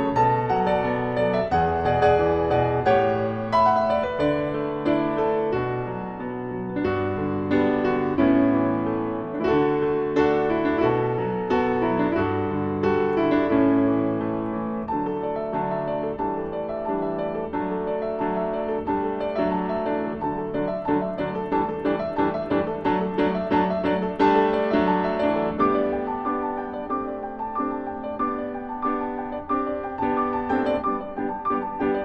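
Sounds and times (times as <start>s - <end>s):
solo piano playing: 0.0s - 32.0s.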